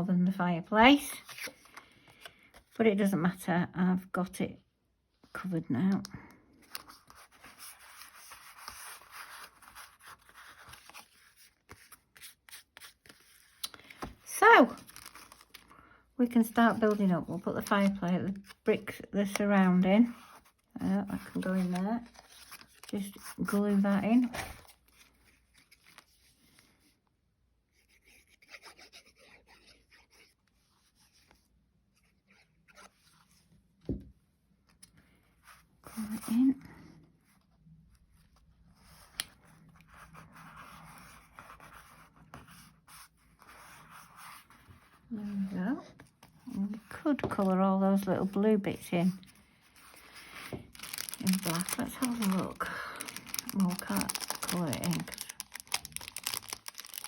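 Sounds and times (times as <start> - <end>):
paper and card scratching: 27.8 - 31.3.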